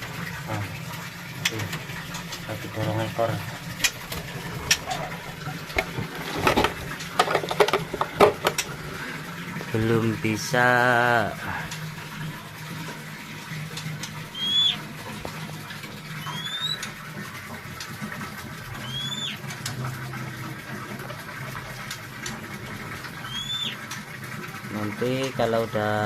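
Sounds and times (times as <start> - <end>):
songbird whistled call notes: 14.3 - 14.8, 16.2 - 16.8, 18.8 - 19.4, 23.2 - 23.8.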